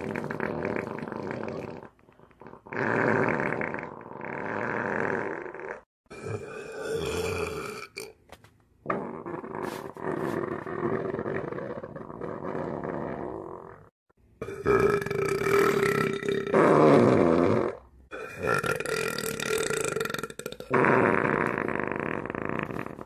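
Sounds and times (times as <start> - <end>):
long belches: 6.1 - 8.2, 14.4 - 23.0.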